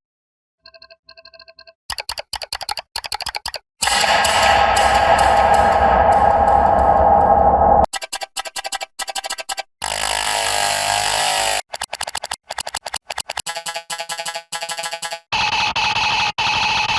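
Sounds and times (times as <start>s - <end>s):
buzzy pitched pulses: 3.8s - 7.9s
synthetic drone: 3.8s - 7.9s.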